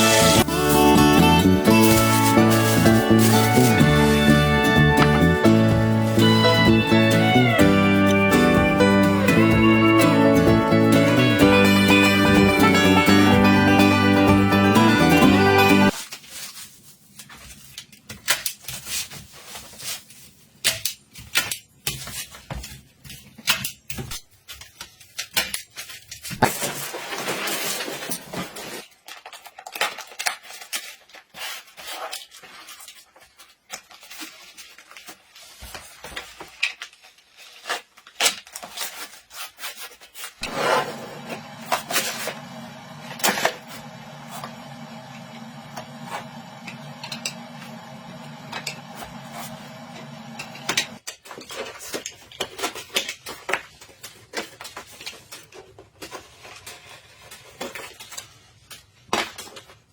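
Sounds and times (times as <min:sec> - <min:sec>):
small appliance motor hum: 0:40.4 - 0:51.0.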